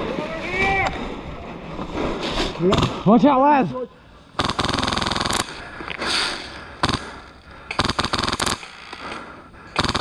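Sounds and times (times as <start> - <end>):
airsoft guns firing bursts: 4.4 - 5.7, 6.8 - 10.0.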